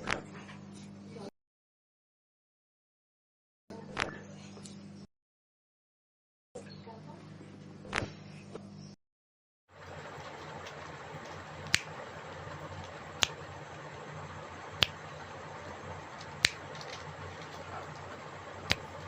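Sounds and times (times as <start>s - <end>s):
sharp clicks: 9.8s - 19.0s
steady low hum: 9.8s - 19.0s.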